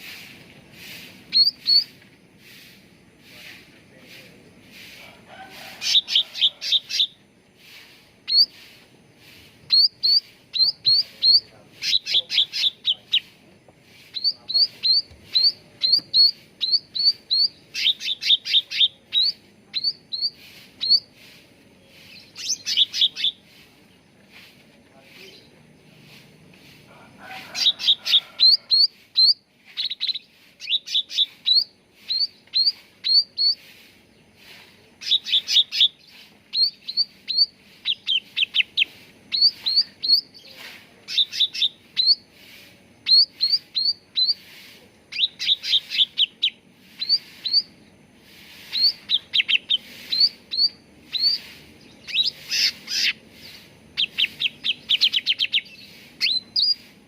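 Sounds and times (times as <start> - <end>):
bird chirping song: 0.0 - 4.8, 5.8 - 26.7, 27.6 - 57.0.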